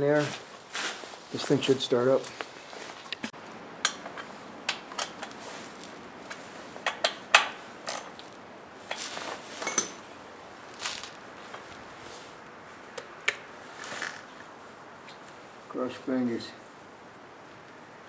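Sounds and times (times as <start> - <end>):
metal tools clinking: 7.8 - 8.3, 8.9 - 10.1.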